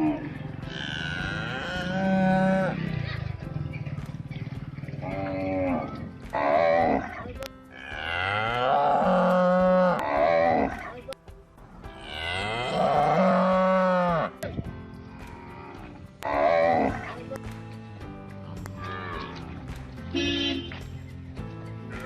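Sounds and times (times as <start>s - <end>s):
cow mooing: 0.0s - 2.9s, 5.0s - 7.2s, 7.8s - 10.8s, 12.0s - 14.4s, 15.4s - 17.2s.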